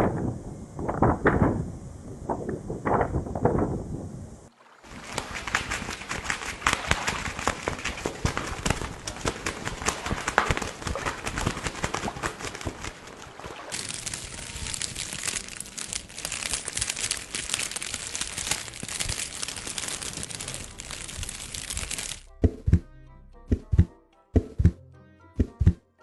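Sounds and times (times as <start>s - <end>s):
material crumpling and crackling: 4.8s - 22.3s.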